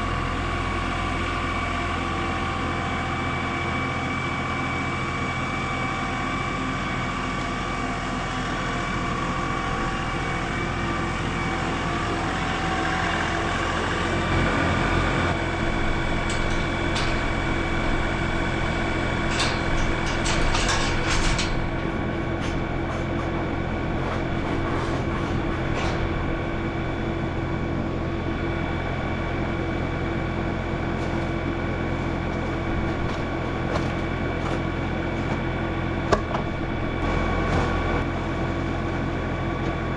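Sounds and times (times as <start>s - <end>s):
tractor engine running: 0.0s - 39.9s
rattles and clanks: 15.3s - 35.4s.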